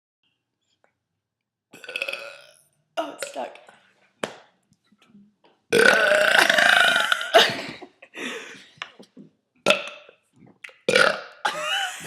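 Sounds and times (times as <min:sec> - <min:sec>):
person burping loudly: 0:01.7 - 0:02.6, 0:05.7 - 0:07.8, 0:09.6 - 0:11.6.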